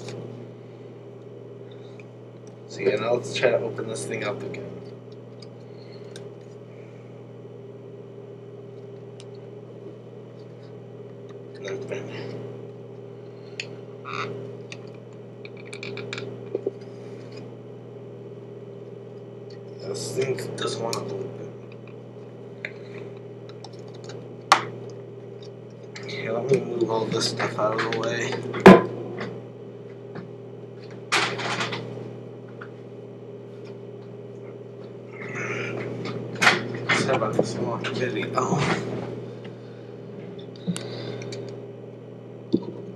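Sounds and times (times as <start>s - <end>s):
low hum: 0.0s - 42.9s
hands clicking and rustling: 14.7s - 16.8s.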